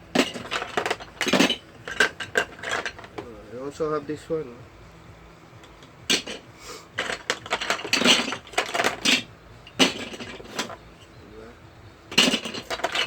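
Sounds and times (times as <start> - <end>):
plastic bricks clattering: 0.2 - 3.2, 7.0 - 9.2, 12.1 - 13.0.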